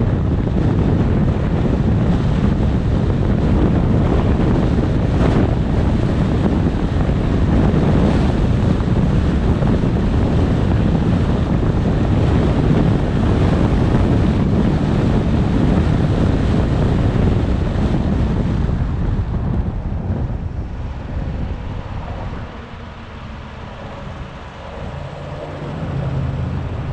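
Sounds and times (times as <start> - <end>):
wind buffeting microphone: 0.0 - 26.9.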